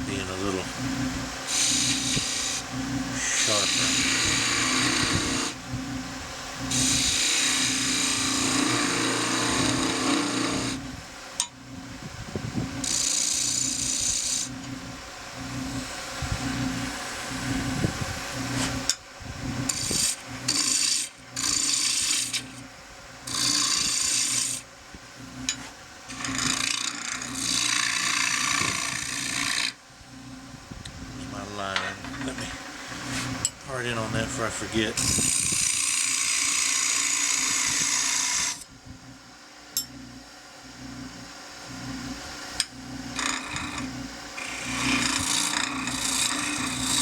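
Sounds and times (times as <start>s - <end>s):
turning tool cutting wood hiss: 0.0s - 5.6s, 6.6s - 10.8s, 12.8s - 14.8s, 19.6s - 24.7s, 25.4s - 29.8s, 31.4s - 38.7s, 42.4s - 47.0s
wood lathe humming: 0.0s - 47.0s.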